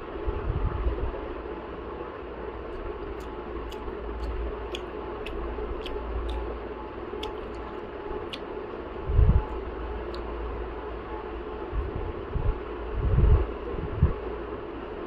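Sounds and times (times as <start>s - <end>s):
steady background noise: 0.0s - 15.0s
light irregular clicks: 2.7s - 6.5s, 7.2s - 8.5s.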